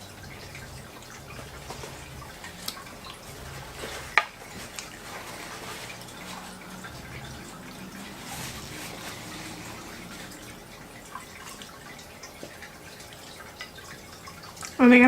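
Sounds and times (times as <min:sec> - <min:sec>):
food handling: 0:00.4 - 0:10.4.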